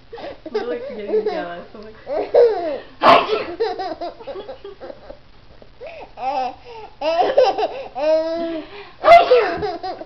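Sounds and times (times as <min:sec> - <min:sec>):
baby laughing and babbling: 0:02.1 - 0:02.8, 0:05.9 - 0:08.6, 0:09.2 - 0:10.0.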